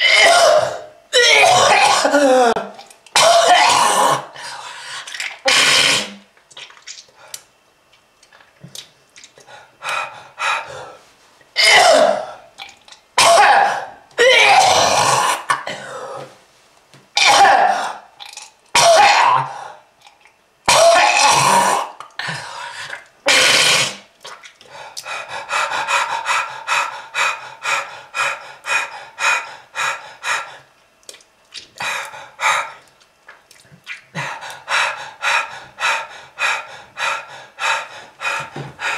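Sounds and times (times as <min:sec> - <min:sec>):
person coughing: 0:00.0 - 0:04.3, 0:11.6 - 0:12.3, 0:13.2 - 0:16.3.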